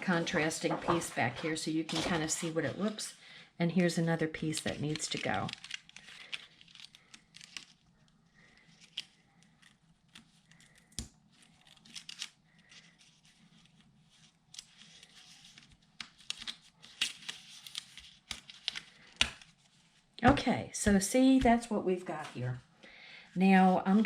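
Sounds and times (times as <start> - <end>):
paper tearing and rustling: 4.5 - 7.8, 8.6 - 19.6.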